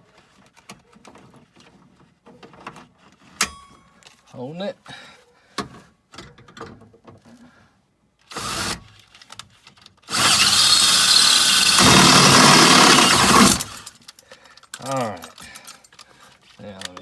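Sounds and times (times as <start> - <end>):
power drill drilling metal: 8.3 - 8.8, 10.1 - 13.9.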